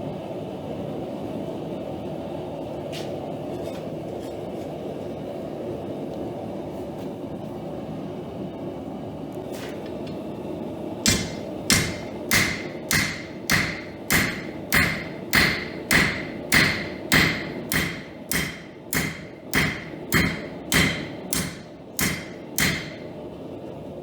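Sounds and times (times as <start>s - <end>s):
hammer striking steel on anvil: 11.0s - 23.1s.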